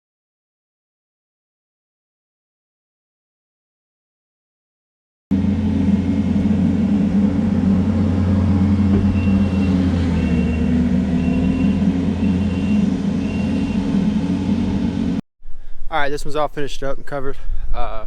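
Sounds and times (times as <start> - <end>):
loader diesel engine running: 5.3 - 15.2
backup alarm beeping: 8.9 - 14.1.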